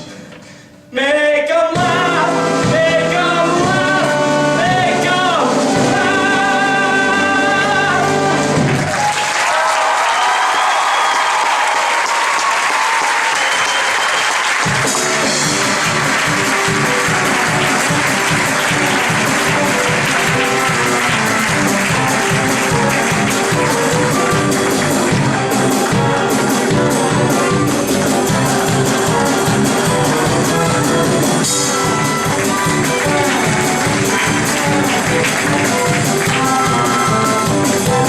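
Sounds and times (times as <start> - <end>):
singers and band performing: 0.0 - 9.1, 13.5 - 38.0
audience applause: 8.0 - 38.0
music with steady beat: 14.6 - 38.0.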